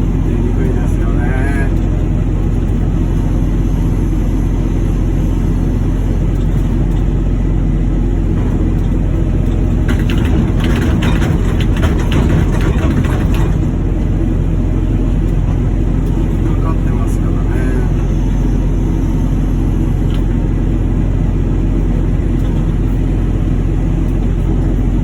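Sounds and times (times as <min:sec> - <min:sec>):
heavy machinery drone: 0:00.0 - 0:25.0
metal clattering and knocking: 0:08.3 - 0:14.2.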